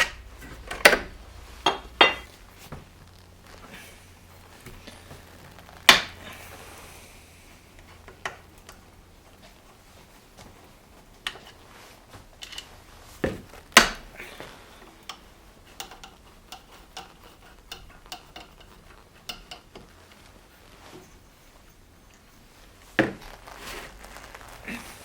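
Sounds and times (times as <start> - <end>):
metal parts and tools clinking: 0.0 - 2.5, 12.4 - 12.8.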